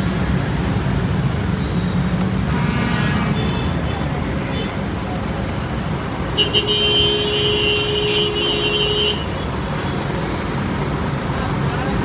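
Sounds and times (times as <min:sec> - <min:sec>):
road traffic noise: 0:00.0 - 0:12.0.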